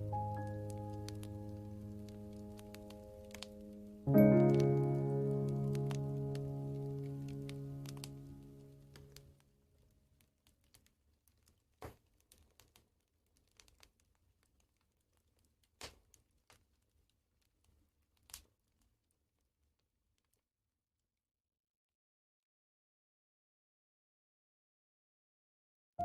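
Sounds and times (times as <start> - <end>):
fire popping: 0.0 - 19.1
wood fire crackling: 0.0 - 20.4.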